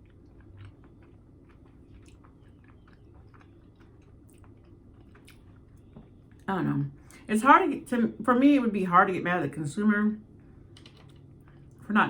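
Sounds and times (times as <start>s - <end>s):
person chewing food: 0.0s - 6.5s, 10.5s - 11.9s.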